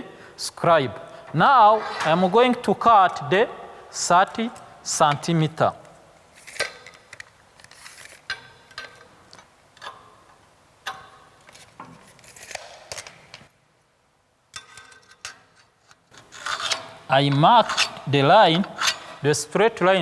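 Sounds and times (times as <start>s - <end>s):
tools scraping on steel: 1.2s - 2.9s, 10.9s - 13.3s, 14.6s - 19.4s.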